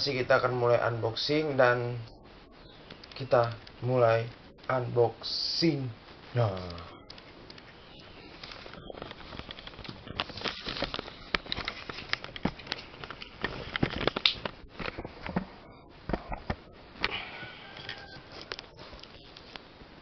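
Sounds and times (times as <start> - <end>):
sharp clicks: 2.8 - 3.8
packaging crinkling and rustling: 8.3 - 15.5.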